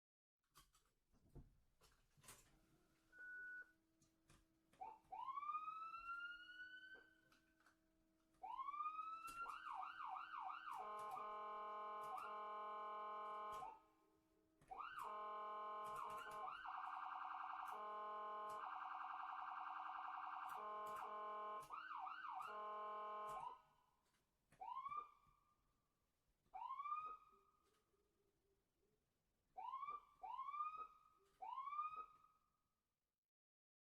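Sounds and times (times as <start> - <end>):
electronic ambulance siren: 4.8 - 7.5, 8.4 - 13.9, 14.6 - 23.8, 24.6 - 25.4, 26.6 - 27.6, 29.6 - 32.5.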